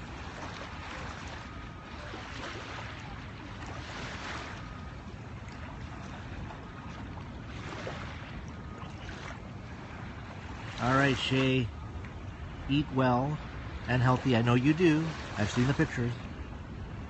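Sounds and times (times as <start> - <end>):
wind rumble on microphone: 0.0 - 17.0
ocean waves hissing: 10.6 - 11.8.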